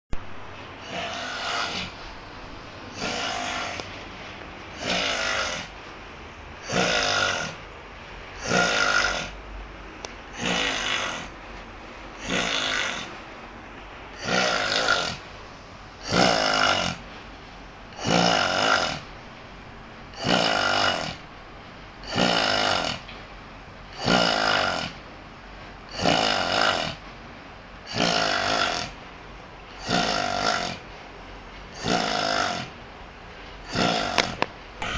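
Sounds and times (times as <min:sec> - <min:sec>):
man snoring loudly: 0:00.9 - 0:01.9, 0:03.0 - 0:03.8, 0:04.8 - 0:05.7, 0:06.6 - 0:07.6, 0:08.4 - 0:09.4, 0:10.4 - 0:11.3, 0:12.2 - 0:13.1, 0:14.2 - 0:15.2, 0:16.0 - 0:17.0, 0:18.0 - 0:19.0, 0:20.1 - 0:21.2, 0:22.0 - 0:23.0, 0:24.0 - 0:25.0, 0:25.9 - 0:27.0, 0:27.9 - 0:29.0, 0:29.8 - 0:30.8, 0:31.8 - 0:32.7, 0:33.6 - 0:34.9.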